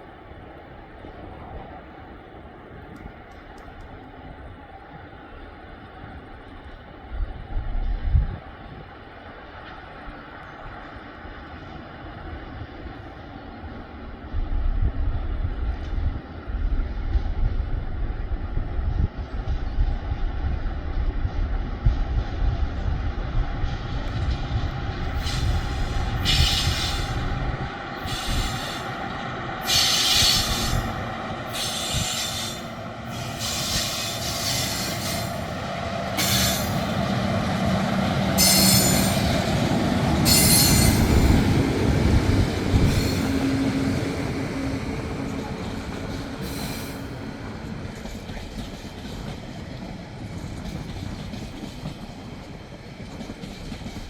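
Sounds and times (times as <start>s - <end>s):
diesel locomotive rumble: 17.0s - 54.0s
rail clatter: 23.6s - 54.0s
high-pitched wheel squeal: 40.3s - 41.1s.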